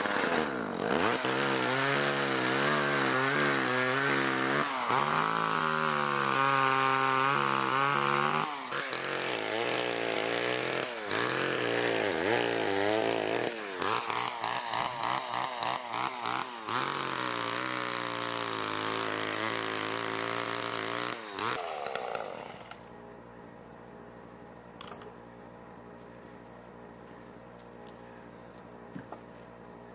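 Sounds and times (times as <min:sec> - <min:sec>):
small gasoline engine revving: 0:00.0 - 0:22.9.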